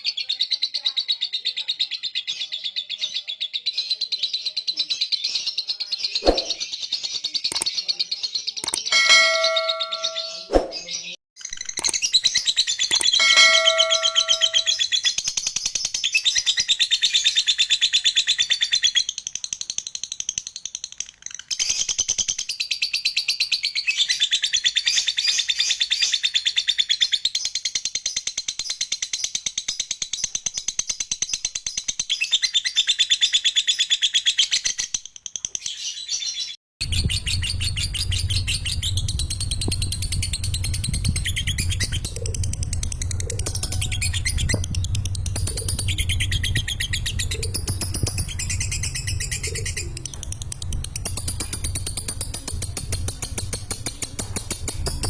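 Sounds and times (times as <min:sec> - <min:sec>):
bell-like ding: 0:08.9 - 0:10.5, 0:13.2 - 0:14.8
bird rattling chatter: 0:37.1 - 0:55.0.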